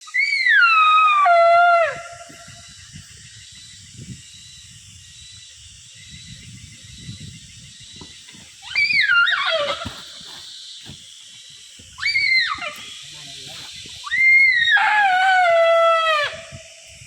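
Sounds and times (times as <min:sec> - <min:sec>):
whistle-like animal call: 0:00.0 - 0:02.5, 0:08.6 - 0:10.1.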